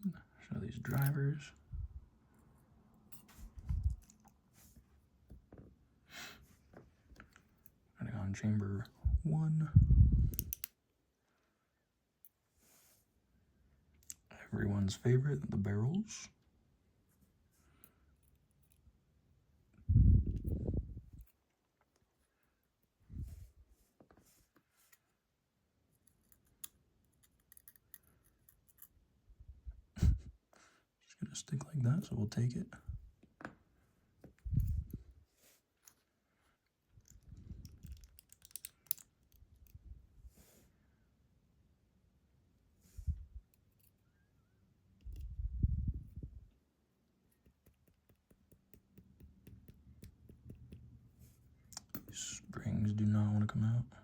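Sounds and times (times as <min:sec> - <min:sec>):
metal lock parts clicking: 0:00.8 - 0:01.2, 0:10.3 - 0:10.8, 0:26.0 - 0:29.0, 0:37.0 - 0:39.8
light metal clicks and ticks: 0:10.3 - 0:10.8, 0:37.0 - 0:39.8.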